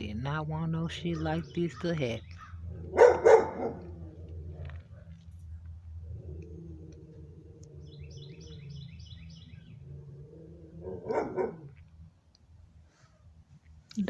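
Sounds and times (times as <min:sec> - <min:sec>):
steady low hum: 0:00.0 - 0:14.0
bird twittering: 0:01.0 - 0:03.8, 0:07.8 - 0:09.9
dog barking: 0:02.8 - 0:04.1, 0:10.9 - 0:11.8.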